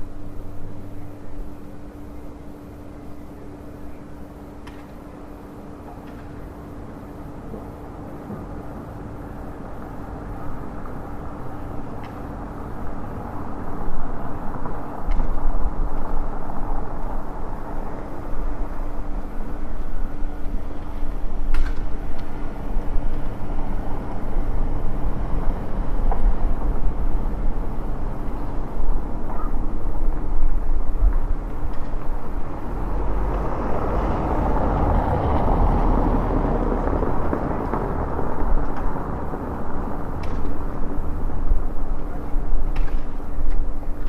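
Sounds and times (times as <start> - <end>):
street traffic: 0.0 - 44.0
vehicle engine humming: 0.0 - 44.0
deep rumble: 13.7 - 42.7.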